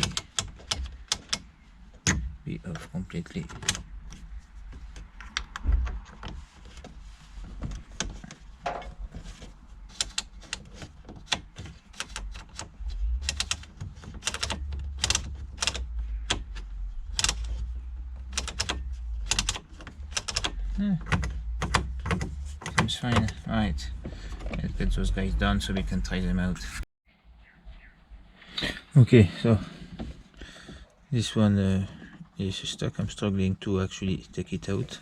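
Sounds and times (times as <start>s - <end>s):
low handling rumble: 14.6s - 26.9s.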